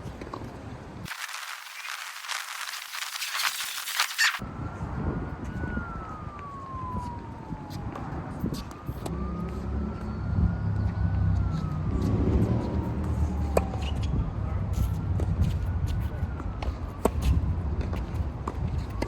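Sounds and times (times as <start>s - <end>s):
emergency vehicle siren wailing: 3.8s - 19.0s.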